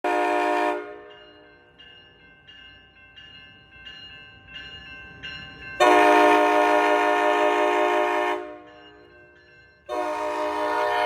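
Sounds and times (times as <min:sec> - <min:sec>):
train horn blast: 0:00.0 - 0:01.1, 0:05.8 - 0:08.7, 0:09.9 - 0:11.0
train bell ringing: 0:00.1 - 0:11.0.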